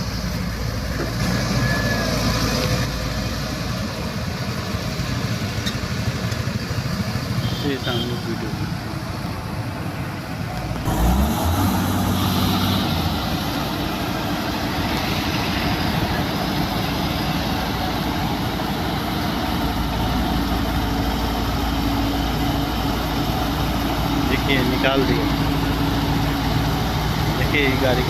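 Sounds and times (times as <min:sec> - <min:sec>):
heavy vehicle engine revving: 0:08.3 - 0:28.0.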